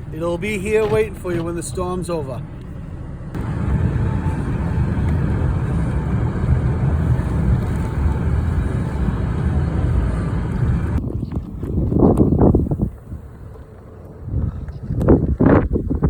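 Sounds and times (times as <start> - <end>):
snowplow engine rumbling: 0.0 - 14.4
rushing noise: 3.4 - 11.0.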